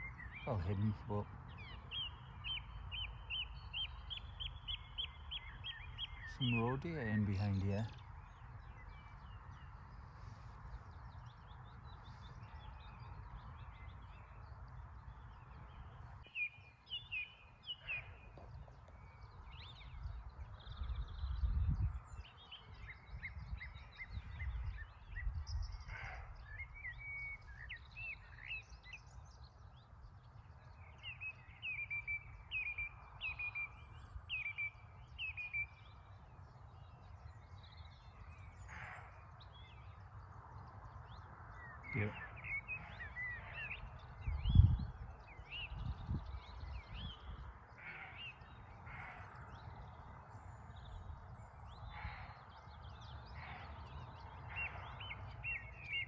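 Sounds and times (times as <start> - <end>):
small birds singing and chirping: 0.0 - 56.0.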